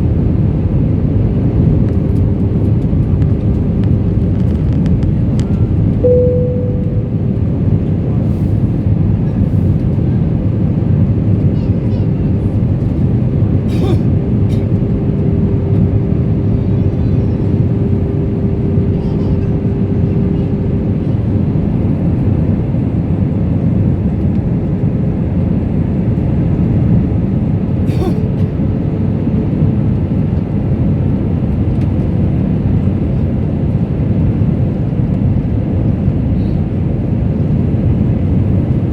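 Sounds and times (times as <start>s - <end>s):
airliner cabin noise: 0.0s - 38.9s
steady hum tone: 6.0s - 8.2s, 13.2s - 23.8s.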